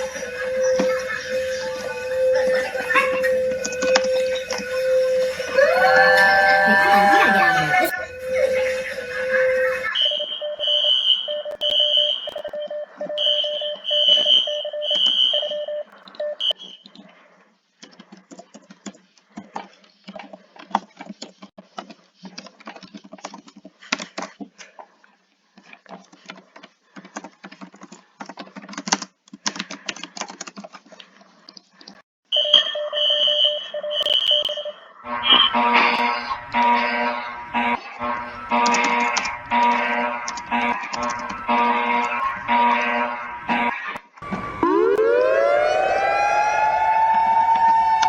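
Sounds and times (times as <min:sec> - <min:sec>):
two-tone electronic alarm beeps: 0:00.0 - 0:16.9, 0:32.3 - 0:47.3
irregular crackling noise: 0:11.4 - 0:32.0, 0:37.7 - 0:42.9.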